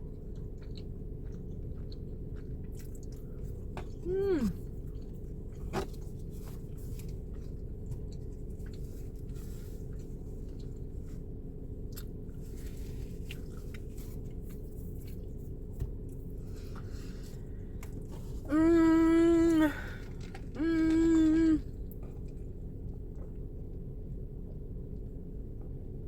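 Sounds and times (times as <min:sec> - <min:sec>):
close chewing and crunching: 0:00.0 - 0:26.0
steady low hum: 0:00.0 - 0:26.0
person humming mmm: 0:04.0 - 0:04.6, 0:18.4 - 0:20.0, 0:20.6 - 0:21.7.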